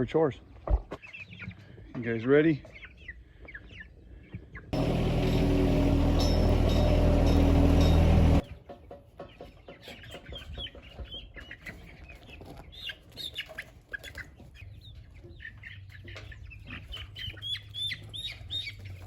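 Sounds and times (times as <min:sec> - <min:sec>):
chicks peeping and chirping: 0:02.6 - 0:07.6, 0:09.2 - 0:19.0.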